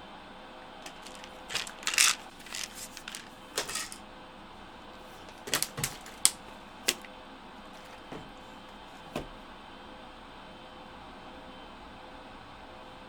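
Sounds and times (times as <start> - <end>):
plastic bottle clicks and rattles: 0.8 - 4.0, 5.0 - 7.1, 7.7 - 9.4.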